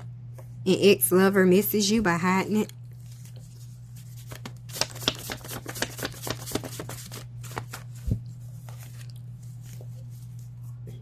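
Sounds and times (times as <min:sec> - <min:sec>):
steady low hum: 0:00.0 - 0:11.0
cards being shuffled: 0:03.0 - 0:10.6.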